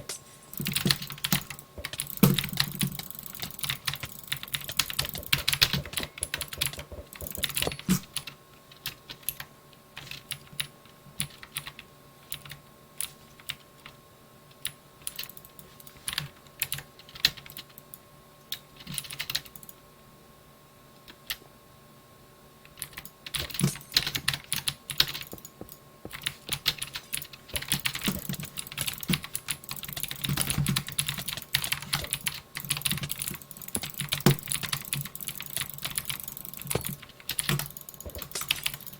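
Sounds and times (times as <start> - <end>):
keyboard typing: 0.0 - 8.3, 22.8 - 38.9.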